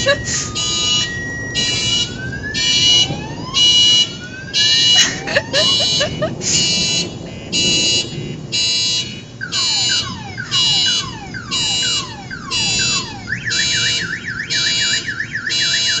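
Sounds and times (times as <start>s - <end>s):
car alarm beeps and whoops: 0.0s - 16.0s.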